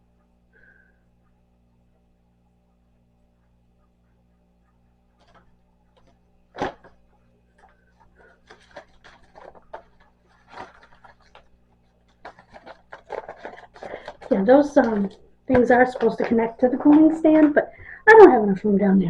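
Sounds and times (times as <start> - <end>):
steady low hum: 0.0 - 19.0
rustling: 4.6 - 17.8.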